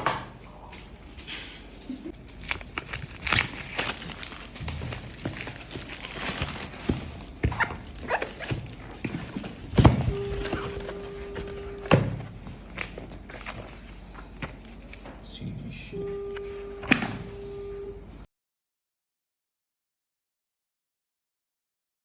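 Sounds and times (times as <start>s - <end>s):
gear being handled: 2.2s - 12.0s.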